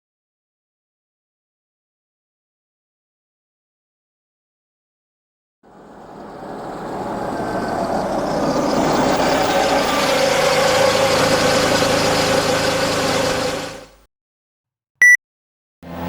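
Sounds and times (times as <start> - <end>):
car engine running: 5.7 - 14.0.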